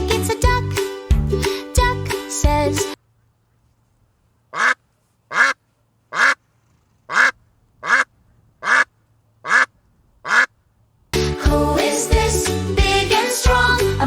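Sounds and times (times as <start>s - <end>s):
duck quacking: 4.5s - 6.4s, 7.1s - 10.5s.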